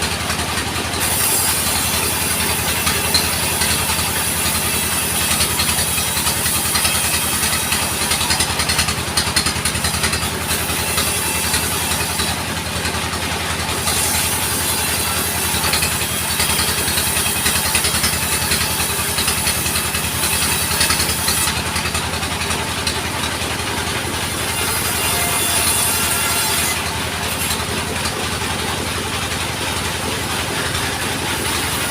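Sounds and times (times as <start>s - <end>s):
sawmill engine running: 0.0s - 31.9s
saw blade hissing: 1.0s - 7.7s.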